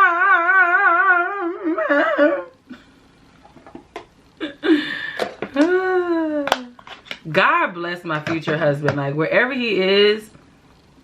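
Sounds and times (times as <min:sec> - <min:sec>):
woman singing without words: 0:00.0 - 0:02.5.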